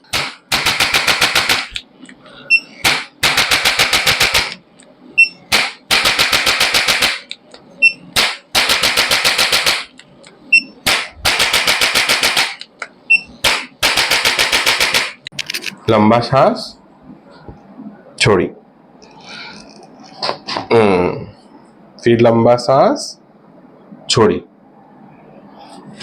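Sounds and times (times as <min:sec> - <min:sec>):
adjusting instrument rapid clicks: 0:02.9 - 0:04.6, 0:05.5 - 0:07.5, 0:08.2 - 0:12.8.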